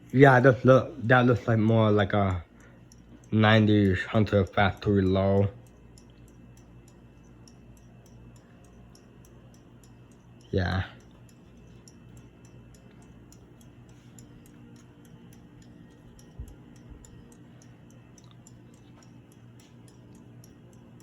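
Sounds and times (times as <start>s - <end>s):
ceiling fan humming and ticking: 0.0s - 21.0s.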